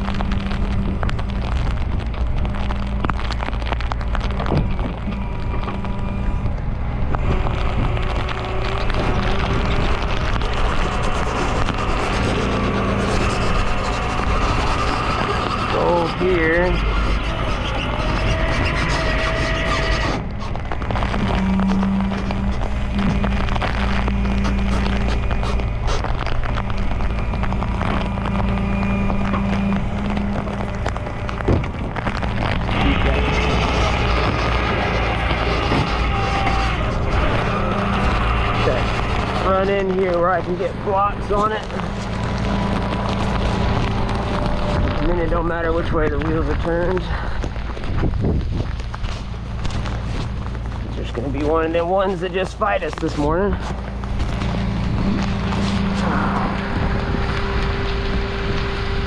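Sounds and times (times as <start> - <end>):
scattered clicks: 0.0 - 58.9
mechanical hum: 0.0 - 59.0
rushing noise: 0.0 - 59.0
wind noise on microphone: 0.0 - 59.0.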